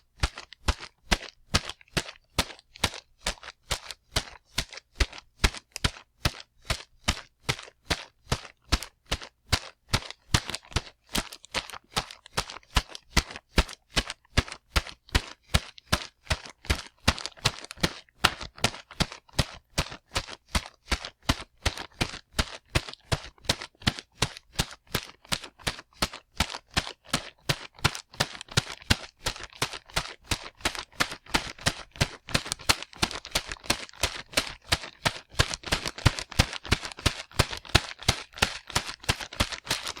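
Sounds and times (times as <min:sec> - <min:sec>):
man running footsteps: 0:00.0 - 0:07.7, 0:15.9 - 0:40.0.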